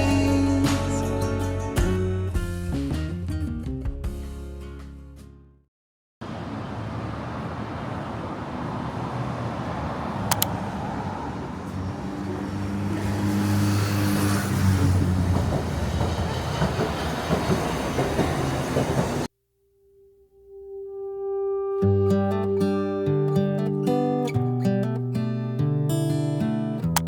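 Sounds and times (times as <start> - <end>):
vehicle engine rumble: 6.2 - 15.8
light ticking: 10.3 - 10.5
sharp click: 10.3 - 10.5.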